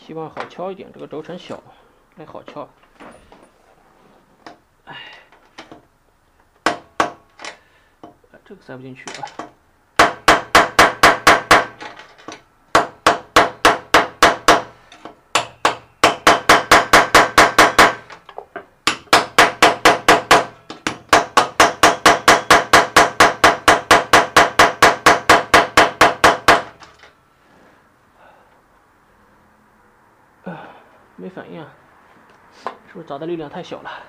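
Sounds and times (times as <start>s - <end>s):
hammer striking metal: 10.0s - 11.9s, 12.7s - 18.1s, 18.8s - 26.8s.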